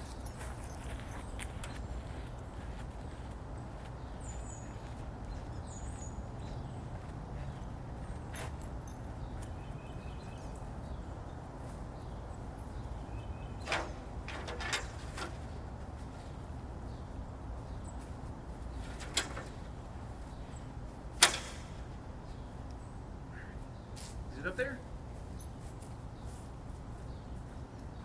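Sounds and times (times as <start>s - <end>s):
ladder knocking and clanking: 13.6s - 15.7s.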